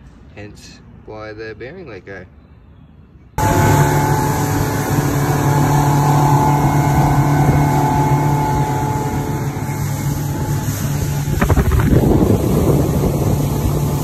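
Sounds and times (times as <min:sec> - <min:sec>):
engine running steadily: 0:03.4 - 0:14.0.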